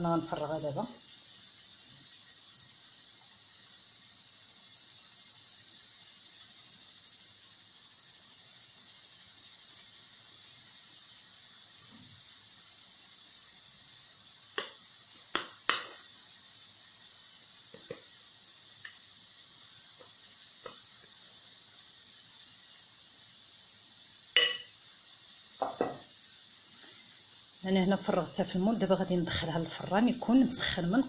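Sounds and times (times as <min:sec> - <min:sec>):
steady hiss: 0:00.0 - 0:31.0
bowl and utensil clinking on pan: 0:24.4 - 0:24.7, 0:25.6 - 0:26.0.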